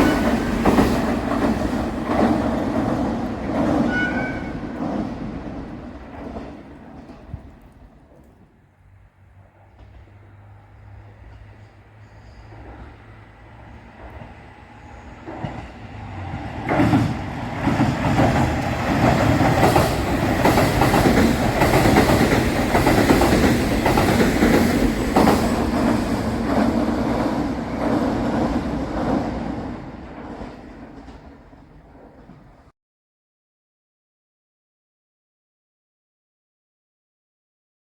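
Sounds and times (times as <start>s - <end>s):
wheels clacking over rail joints: 0.0s - 32.6s
diesel train passing: 0.0s - 32.7s.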